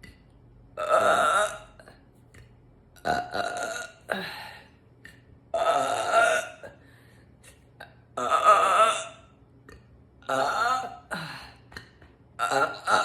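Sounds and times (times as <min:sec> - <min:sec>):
woman burping: 0:00.8 - 0:02.0, 0:03.0 - 0:04.6, 0:05.6 - 0:06.8, 0:10.2 - 0:13.0.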